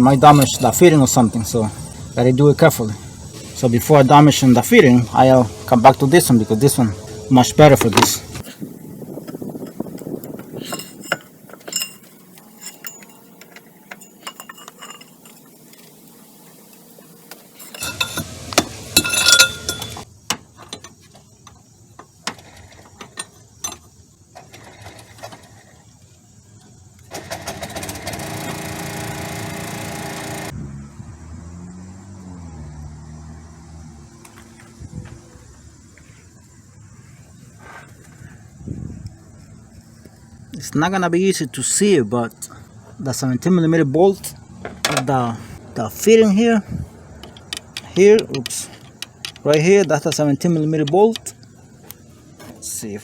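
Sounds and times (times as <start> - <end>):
hand tools clinking on metal: 0.0 - 1.7, 9.6 - 16.0, 17.6 - 20.0, 47.2 - 51.4
loud metal clanks: 17.6 - 20.0
mechanical buzz: 27.6 - 32.6.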